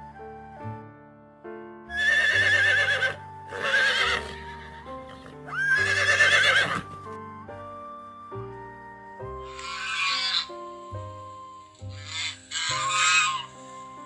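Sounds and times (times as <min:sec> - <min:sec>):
background music: 0:00.0 - 0:14.0
horse whinnying: 0:01.9 - 0:07.0, 0:09.5 - 0:10.5, 0:12.0 - 0:13.5.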